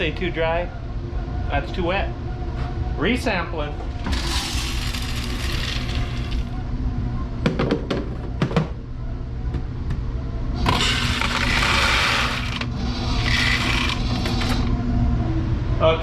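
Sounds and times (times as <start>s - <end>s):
grain dryer low hum: 3.8s - 6.6s, 10.6s - 14.7s.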